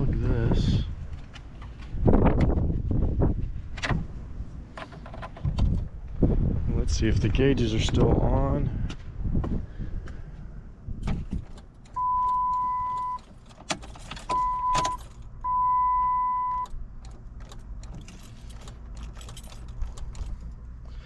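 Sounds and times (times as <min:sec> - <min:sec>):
keys jingling: 0:11.0 - 0:15.4, 0:16.4 - 0:21.0
electronic beeps: 0:12.0 - 0:13.2, 0:14.3 - 0:16.7.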